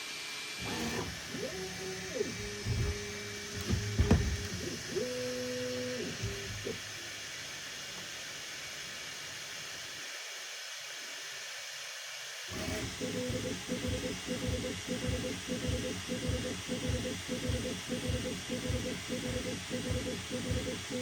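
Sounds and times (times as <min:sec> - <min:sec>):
stepper motors humming: 0:00.6 - 0:07.1, 0:12.5 - 0:21.0.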